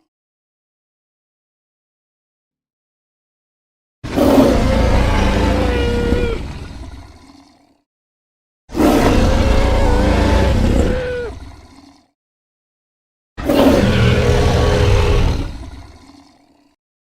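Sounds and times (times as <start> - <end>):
dinosaur roar: 4.1 - 7.7, 8.7 - 12.1, 13.4 - 16.8.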